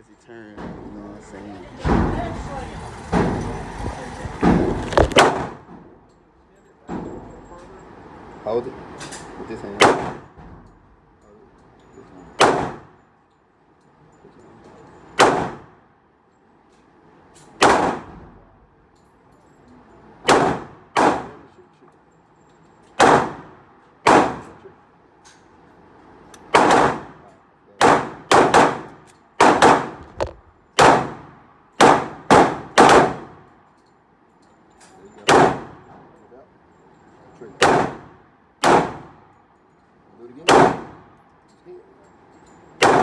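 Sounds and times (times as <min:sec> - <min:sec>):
gunshots with echo: 0:05.0 - 0:05.7, 0:09.8 - 0:10.3, 0:12.4 - 0:12.9, 0:15.2 - 0:15.7, 0:17.6 - 0:18.1, 0:23.0 - 0:24.5, 0:26.5 - 0:27.2, 0:27.8 - 0:33.3, 0:37.6 - 0:39.2, 0:40.5 - 0:41.0.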